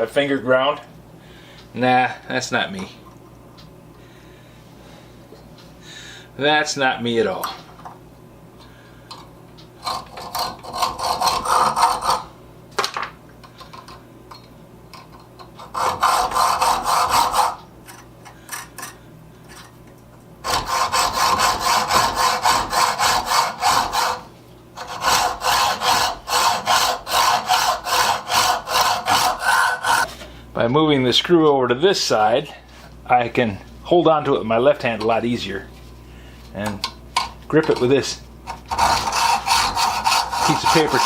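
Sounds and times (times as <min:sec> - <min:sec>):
metal filing strokes on screw: 0:09.9 - 0:12.3, 0:15.6 - 0:17.6, 0:20.4 - 0:30.1, 0:38.7 - 0:41.0.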